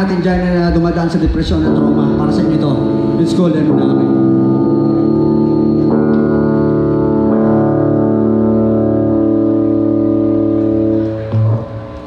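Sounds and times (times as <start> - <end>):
organ-like keyboard chords: 0.0 - 12.0.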